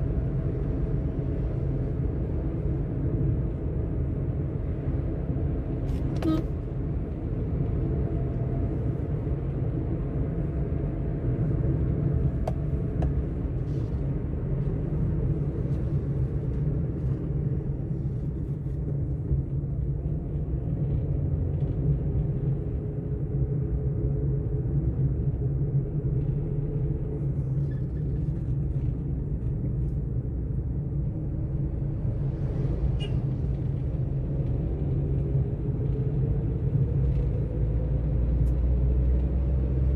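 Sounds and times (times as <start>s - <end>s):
car cabin rumble: 11.0s - 39.4s.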